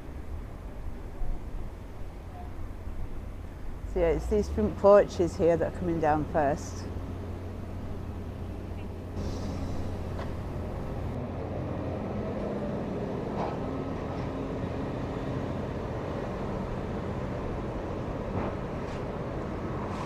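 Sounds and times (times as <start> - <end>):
diesel engine running: 3.3 - 12.1.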